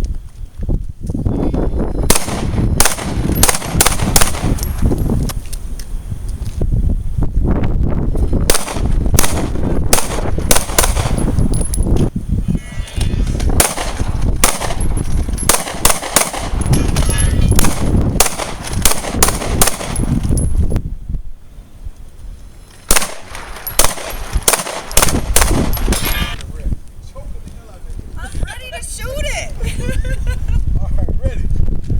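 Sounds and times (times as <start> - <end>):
pistol shots: 2.1 - 4.8, 8.5 - 11.3, 13.4 - 20.1, 22.9 - 26.2.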